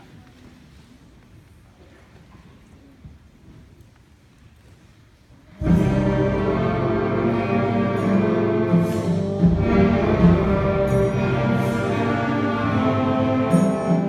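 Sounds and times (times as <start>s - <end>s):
orchestral music: 5.6s - 14.0s.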